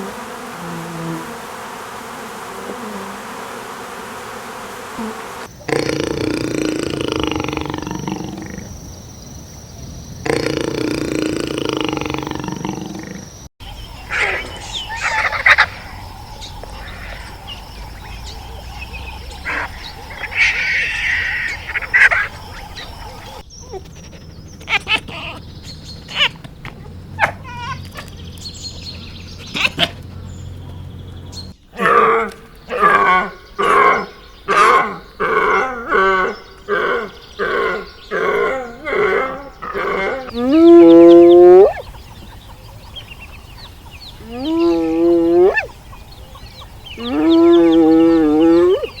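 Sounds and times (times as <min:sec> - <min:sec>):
rising animal calls: 0:10.2 - 0:49.0.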